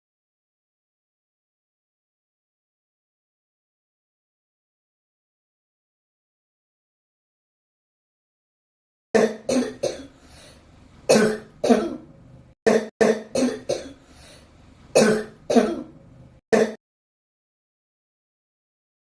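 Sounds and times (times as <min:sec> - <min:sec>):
person coughing: 0:09.2 - 0:10.2, 0:11.1 - 0:12.1, 0:12.7 - 0:14.0, 0:15.0 - 0:16.0, 0:16.6 - 0:16.8.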